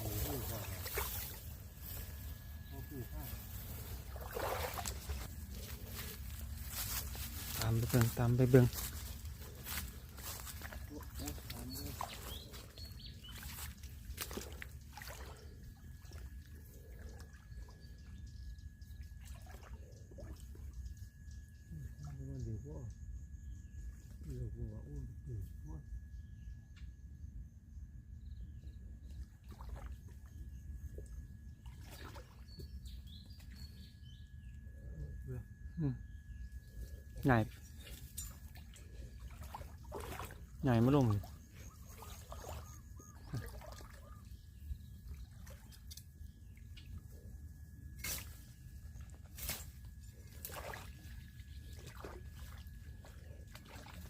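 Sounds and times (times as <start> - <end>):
water trickling and splashing: 0.0 - 2.3, 3.2 - 18.1, 19.1 - 20.7, 31.7 - 32.7, 37.3 - 47.1, 48.0 - 54.0
high bird chirps: 40.6 - 45.3.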